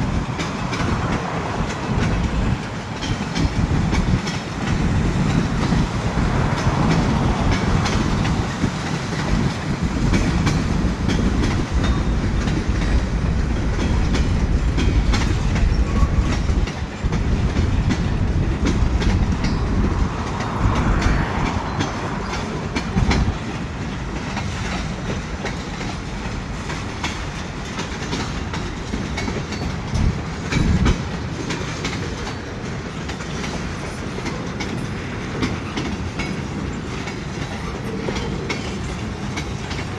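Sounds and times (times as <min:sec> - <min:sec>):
freight train rumbling past: 0:00.0 - 0:39.9
wheels clicking over rail joints: 0:00.0 - 0:39.9.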